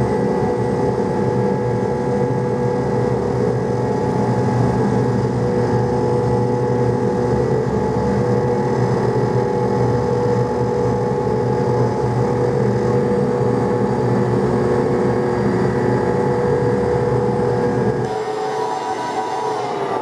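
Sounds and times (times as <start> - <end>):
jet engines at high thrust: 12.1 - 20.0
engine whining tones: 18.0 - 20.0.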